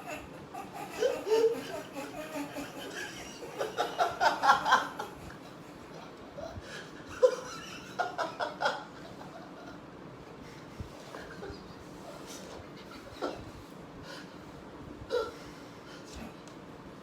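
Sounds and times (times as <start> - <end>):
people laughing: 0.0 - 5.8, 7.0 - 9.8.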